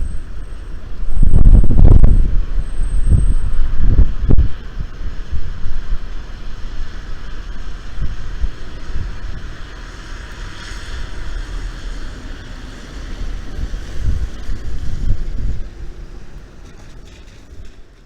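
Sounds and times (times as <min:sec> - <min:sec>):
gusty wind hissing: 0:00.0 - 0:18.0
wind buffeting the microphone: 0:00.0 - 0:18.0.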